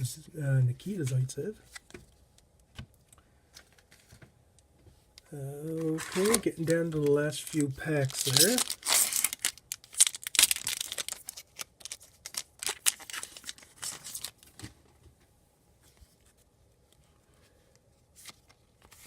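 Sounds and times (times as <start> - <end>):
wrapper tearing and crinkling: 5.7 - 14.6.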